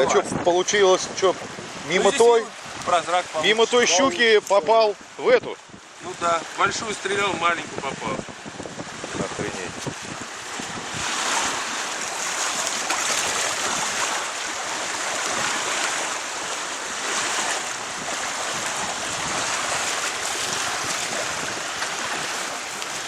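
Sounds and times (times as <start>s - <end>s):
water rushing: 0.0s - 23.0s
wind rushing: 5.7s - 14.3s.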